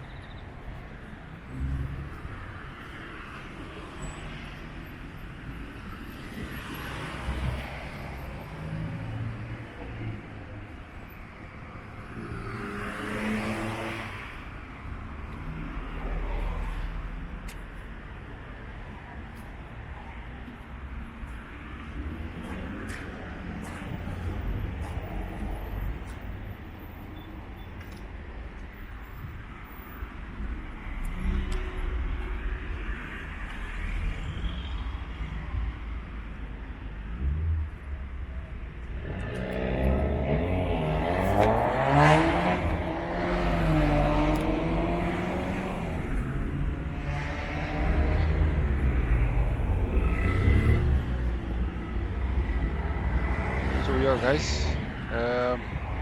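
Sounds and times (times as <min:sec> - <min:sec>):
vehicle low rumble: 0:35.5 - 0:55.0.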